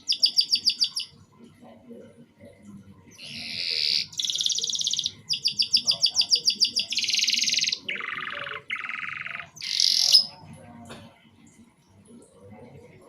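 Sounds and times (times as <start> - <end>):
canary singing trills: 0.0 - 1.2, 3.1 - 10.5.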